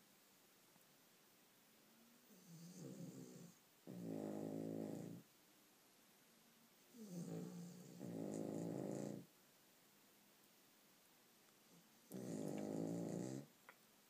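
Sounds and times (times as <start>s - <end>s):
dog snoring loudly: 2.3s - 5.2s, 6.9s - 9.3s, 12.1s - 13.5s.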